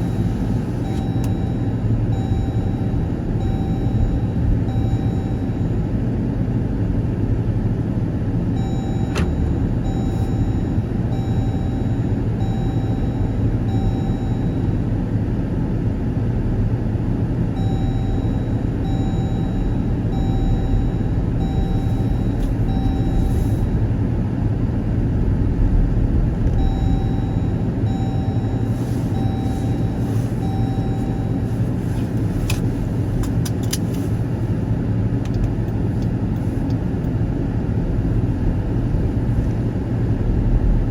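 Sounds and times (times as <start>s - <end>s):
short beeps: 0.0s - 5.8s, 8.6s - 14.8s, 17.6s - 23.8s, 26.5s - 31.6s
car engine and road noise: 0.0s - 40.9s.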